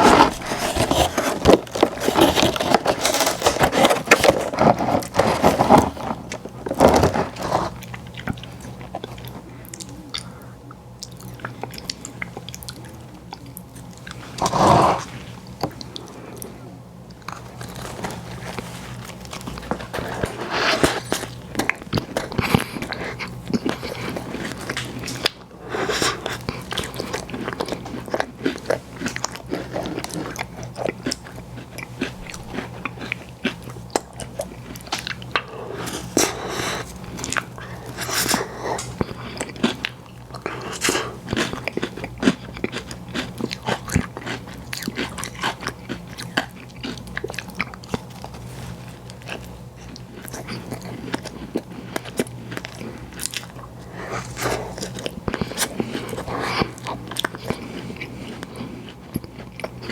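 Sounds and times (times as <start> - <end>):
food crunching: 0.0 - 10.4, 11.0 - 16.5, 17.1 - 59.9
wet chewing: 17.2 - 59.9.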